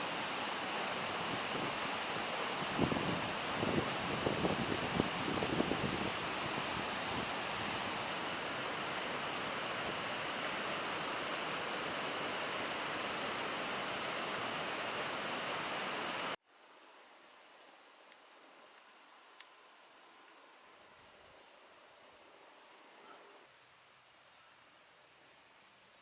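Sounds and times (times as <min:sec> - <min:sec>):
waterfall rushing: 0:00.0 - 0:16.4
crickets chirping: 0:00.0 - 0:23.5.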